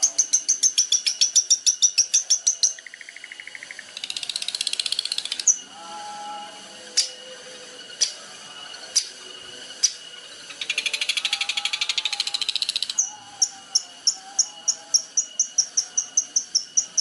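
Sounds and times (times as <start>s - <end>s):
soft whistled bird notes: 0.0s - 17.0s
songbird trills: 0.0s - 17.0s
sharp bird chip notes: 6.9s - 7.3s, 7.9s - 9.2s, 9.8s - 17.0s.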